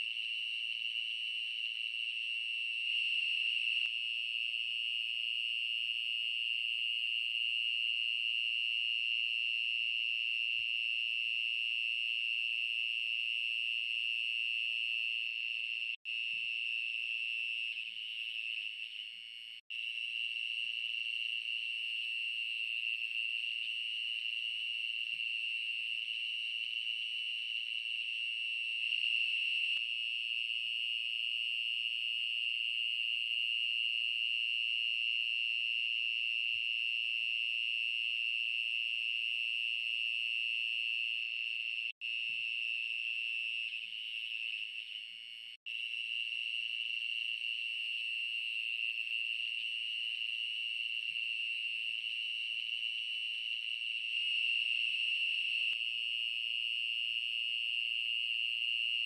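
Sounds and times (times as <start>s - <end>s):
night insect chorus: 0.0s - 59.0s.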